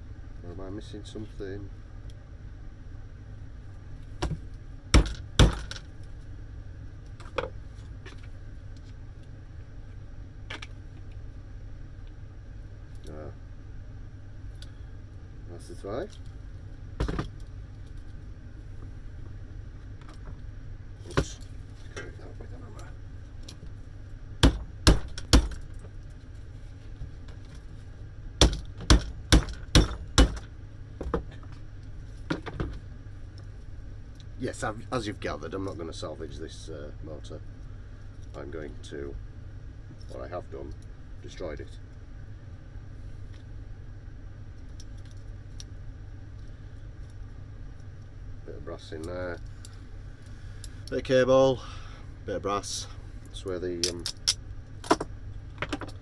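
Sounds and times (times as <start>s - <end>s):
hammer striking metal motor: 28.4s - 30.5s.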